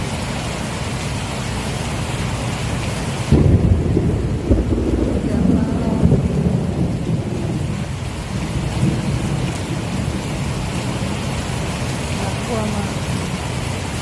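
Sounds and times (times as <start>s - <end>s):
steady rain: 0.0s - 14.0s
thunder rumbling: 3.3s - 13.5s.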